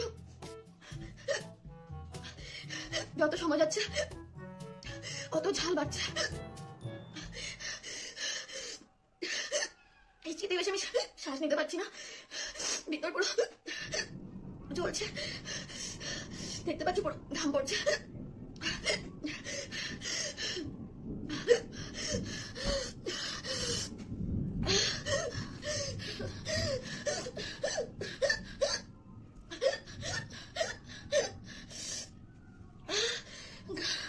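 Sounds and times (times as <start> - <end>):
woman gasping and panting: 24.6 - 28.8.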